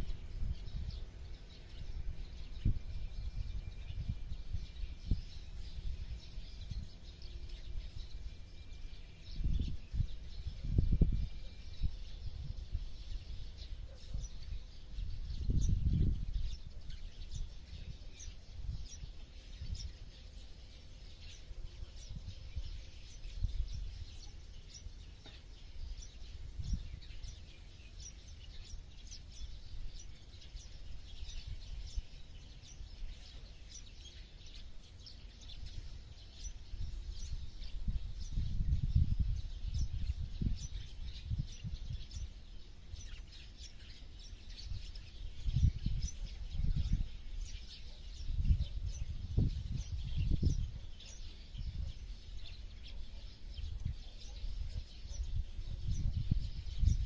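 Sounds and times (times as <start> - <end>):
small birds chirping: 0.0 - 57.0.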